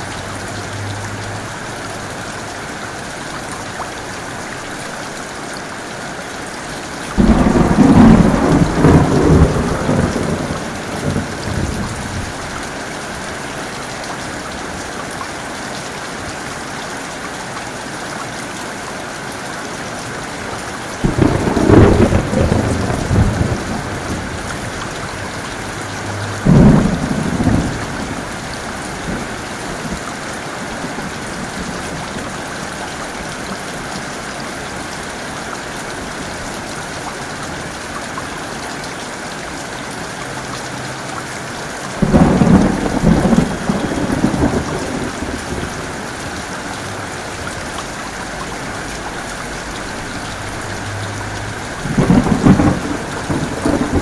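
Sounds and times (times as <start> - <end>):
heavy rain pouring: 0.0 - 54.0
thunder claps: 7.2 - 12.4, 21.0 - 30.0, 42.0 - 46.7, 49.6 - 54.0.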